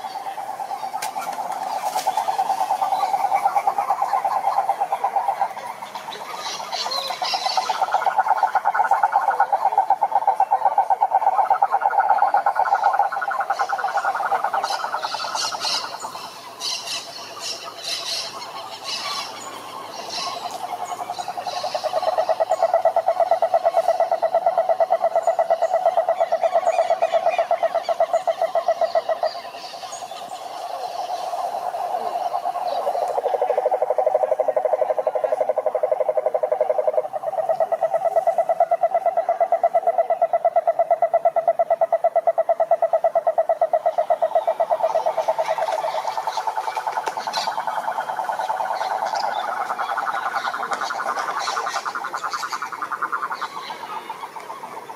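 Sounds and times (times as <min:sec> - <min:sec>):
frogs trilling: 0:00.0 - 0:54.9
high clicking frog calls: 0:00.0 - 0:54.9.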